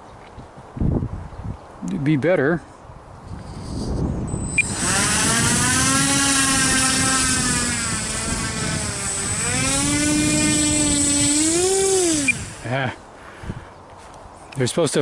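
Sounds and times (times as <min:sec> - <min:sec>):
model plane propeller hum: 0:03.5 - 0:13.0.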